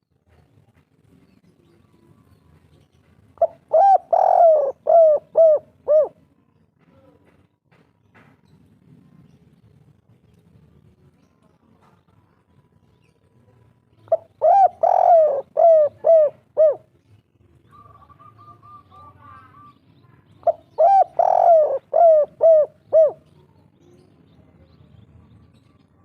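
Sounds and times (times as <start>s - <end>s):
dove hooting coos: 3.4s - 6.2s, 14.1s - 16.9s, 17.7s - 19.7s, 20.4s - 23.4s.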